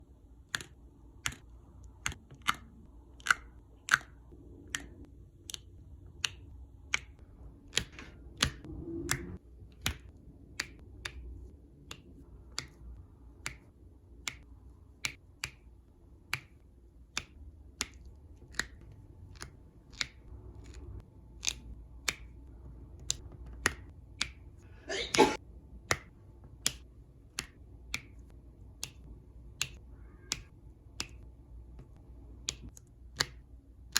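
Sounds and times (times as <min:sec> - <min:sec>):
person sneezing: 0:24.7 - 0:25.4.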